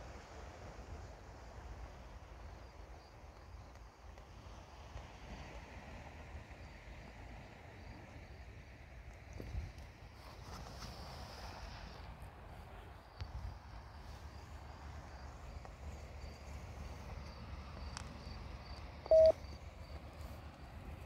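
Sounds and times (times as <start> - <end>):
insect chirping: 13.9 - 20.0
short loud beep: 19.1 - 19.4.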